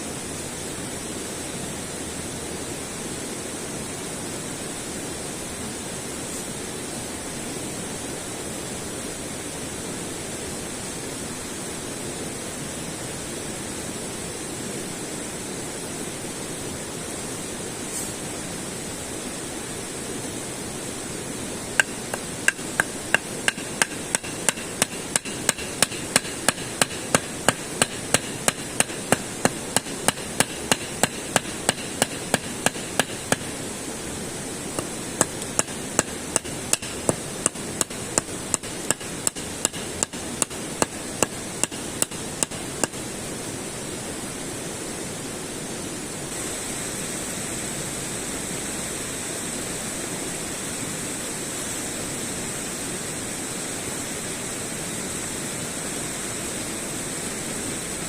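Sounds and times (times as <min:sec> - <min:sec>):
hammering: 0:21.8 - 0:33.6, 0:34.8 - 0:43.0
steady rushing background: 0:21.8 - 0:43.1.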